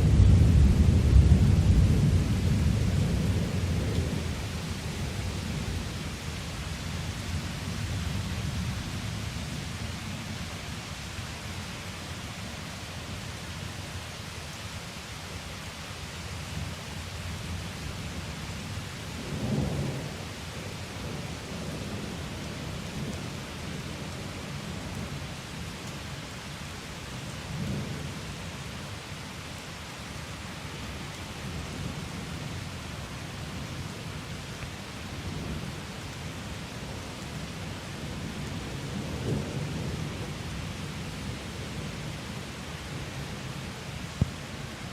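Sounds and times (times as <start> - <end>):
thunder rolling: 0.0 - 4.2.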